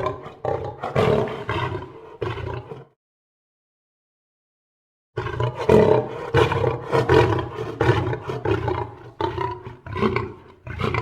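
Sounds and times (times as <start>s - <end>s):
lion roaring: 0.0s - 2.9s, 5.2s - 11.0s.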